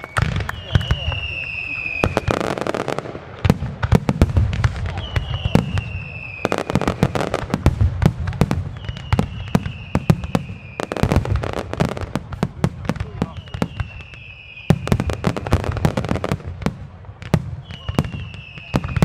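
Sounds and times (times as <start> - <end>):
high falling whistles: 0.0 - 2.4, 5.0 - 6.6, 8.7 - 11.0
fireworks bursts and bangs: 0.0 - 19.0.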